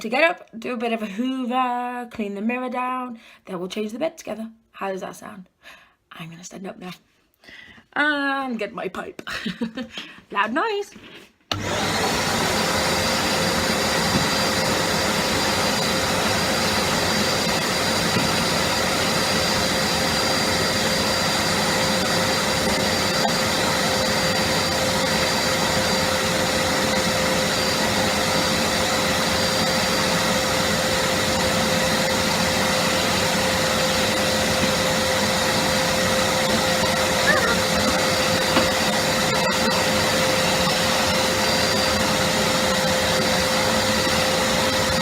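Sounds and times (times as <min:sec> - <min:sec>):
vacuum cleaner running: 0:11.5 - 0:45.0.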